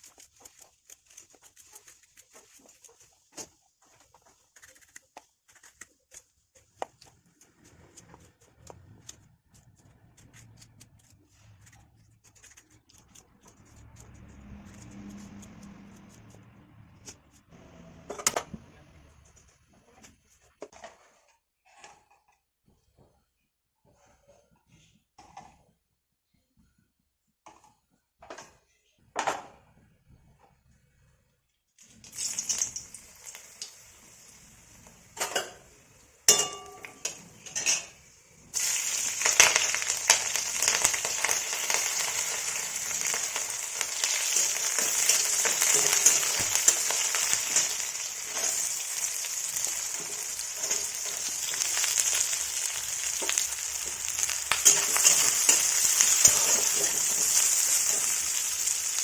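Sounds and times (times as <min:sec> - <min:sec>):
food sizzling in hot oil: 0:31.8 - 0:59.0.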